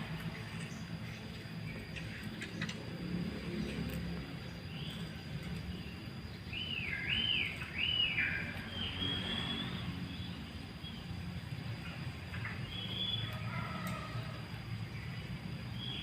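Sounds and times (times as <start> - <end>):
low background hum: 0.0 - 16.0
lovebird chirping: 3.7 - 11.2.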